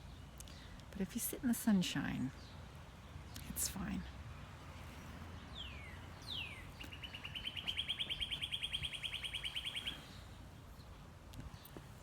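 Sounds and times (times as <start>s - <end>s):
songbird whistles and trill: 5.8s - 10.1s.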